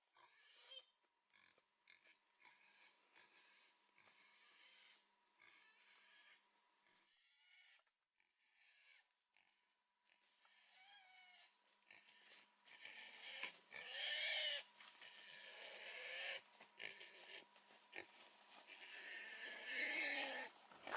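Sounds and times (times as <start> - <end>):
wild boar squealing: 0.2 - 1.5, 2.4 - 6.4, 7.0 - 7.9, 8.5 - 9.0, 10.4 - 17.5, 18.6 - 20.9.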